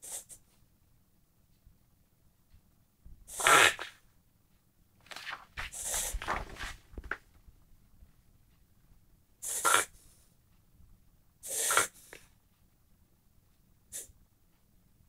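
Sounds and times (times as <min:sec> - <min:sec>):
dog reverse-sneezing: 0:03.3 - 0:03.9, 0:09.4 - 0:09.9, 0:11.4 - 0:12.1.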